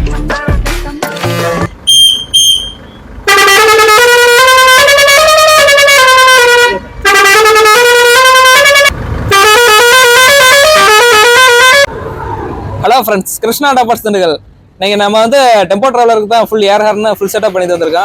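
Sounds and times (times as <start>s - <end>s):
musical air horn playing a tune: 1.4s - 11.9s.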